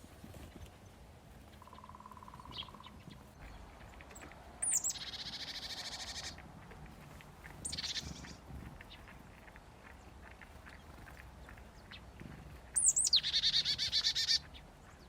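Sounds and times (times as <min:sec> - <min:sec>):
low buzzy bird trill: 0:01.6 - 0:03.6, 0:04.6 - 0:06.4.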